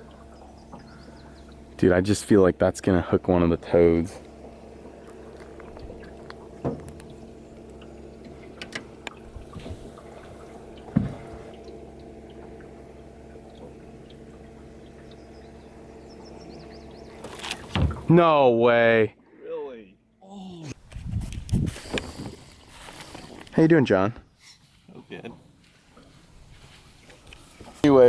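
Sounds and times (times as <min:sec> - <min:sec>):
water trickling and dripping: 0:00.0 - 0:02.8, 0:04.2 - 0:18.1
low hum: 0:00.0 - 0:23.5.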